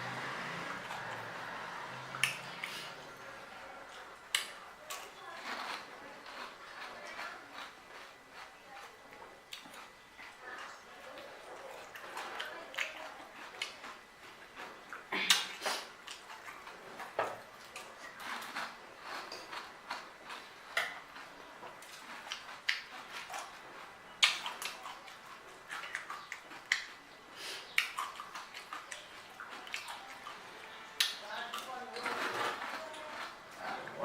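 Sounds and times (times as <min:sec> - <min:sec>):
crisp shells crunching when chewed: 0:03.9 - 0:27.1, 0:27.7 - 0:34.0
wet mouth sounds: 0:11.9 - 0:16.7, 0:24.2 - 0:30.4.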